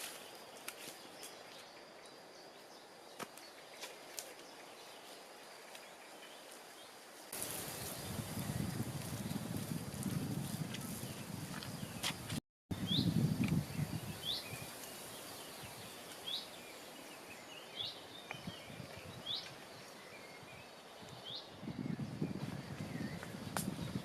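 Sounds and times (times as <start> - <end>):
low rustle: 7.3 - 12.4
bird chirping: 10.9 - 24.0.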